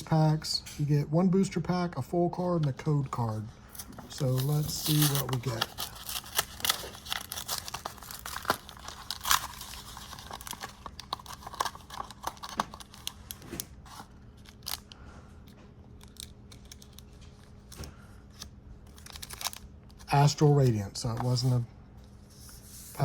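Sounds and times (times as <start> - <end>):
blister pack tearing and crinkling: 4.1 - 15.0, 15.9 - 20.1.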